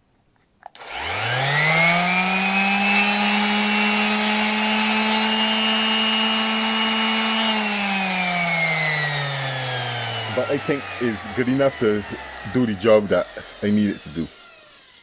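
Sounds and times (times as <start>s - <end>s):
orbital sander motor whine: 0.8s - 15.0s.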